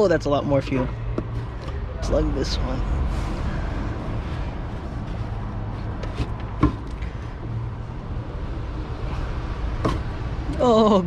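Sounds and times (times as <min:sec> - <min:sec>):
steady low rumble: 0:01.0 - 0:10.5.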